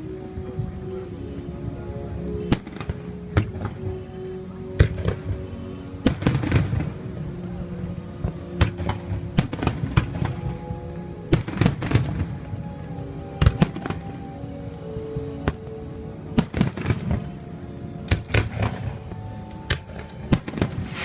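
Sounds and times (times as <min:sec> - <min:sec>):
music playing: 0:00.0 - 0:21.0
fireworks bangs: 0:20.3 - 0:21.0.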